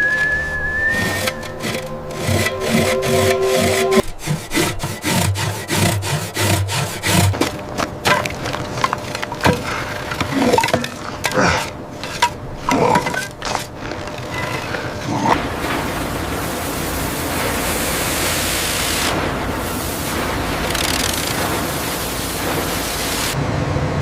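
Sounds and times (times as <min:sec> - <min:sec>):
saw cutting through ice: 0:00.9 - 0:15.4, 0:19.8 - 0:23.4.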